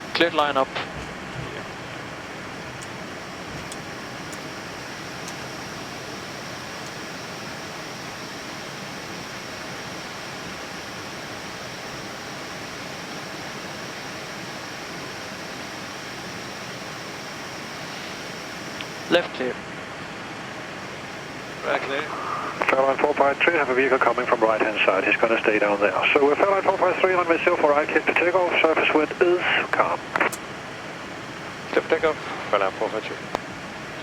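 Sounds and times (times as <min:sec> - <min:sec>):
jet engines idling: 0:00.0 - 0:34.0
cockpit air-conditioning hiss: 0:00.1 - 0:34.0.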